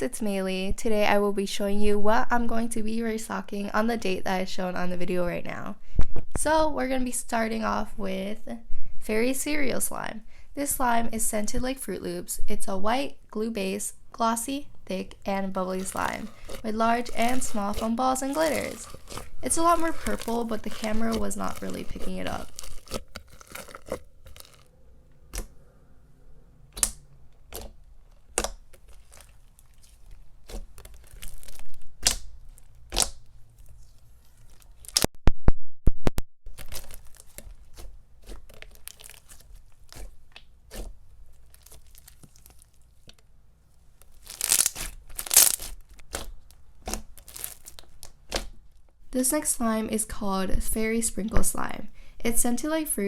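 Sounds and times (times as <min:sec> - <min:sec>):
slime squished by hand: 0:15.6 - 0:24.7, 0:26.8 - 0:35.1, 0:36.5 - 0:48.7.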